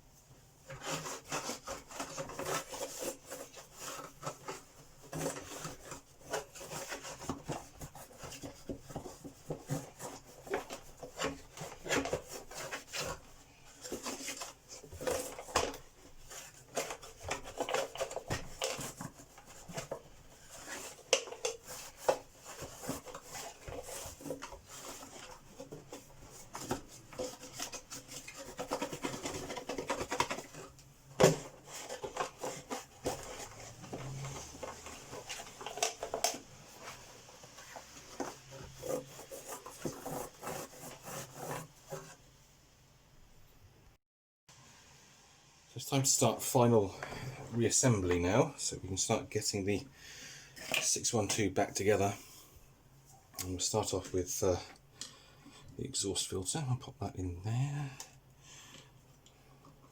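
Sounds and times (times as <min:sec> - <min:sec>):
rubbing and scrubbing: 0:00.5 - 0:42.3.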